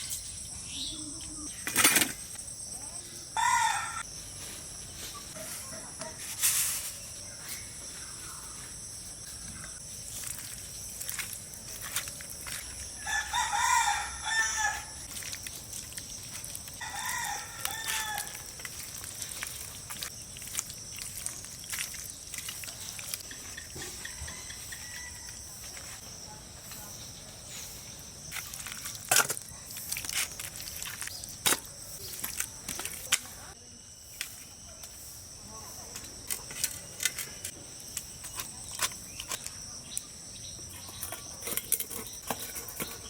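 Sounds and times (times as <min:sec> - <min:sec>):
rooster crowing: 0:03.4 - 0:04.1, 0:13.0 - 0:15.0, 0:16.8 - 0:18.5, 0:24.0 - 0:25.6.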